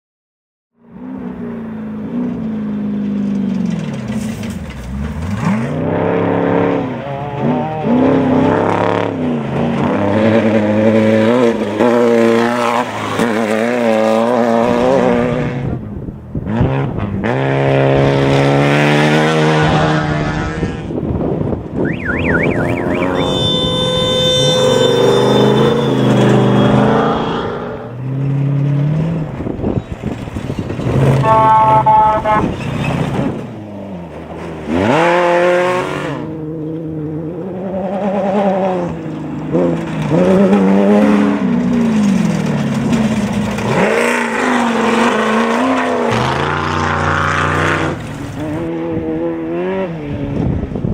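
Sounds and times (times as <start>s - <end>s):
race truck engines revving: 0.9s - 50.9s
fast warbling tone: 21.8s - 27.9s, 31.2s - 32.7s
steady held tone: 21.8s - 28.0s, 31.2s - 32.6s.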